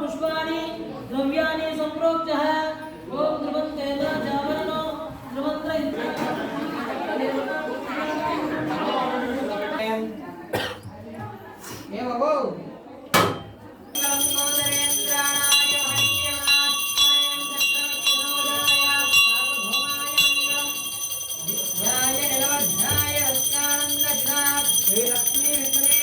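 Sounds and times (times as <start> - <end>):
bell ringing in quick strokes: 14.0 - 26.0.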